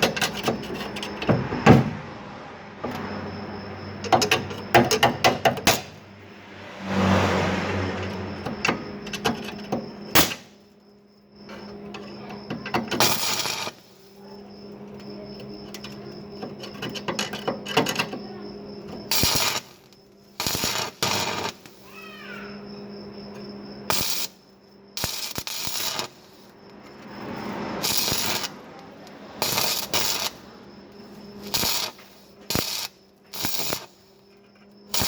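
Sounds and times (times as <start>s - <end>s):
welding arc crackling: 0.0s - 0.7s, 5.0s - 6.1s, 13.0s - 14.2s, 19.1s - 22.0s, 23.9s - 24.4s, 25.0s - 34.2s
electrical welder hum: 0.0s - 1.9s, 3.9s - 6.6s, 7.9s - 10.8s, 12.5s - 18.0s, 18.9s - 22.1s, 23.7s - 35.0s.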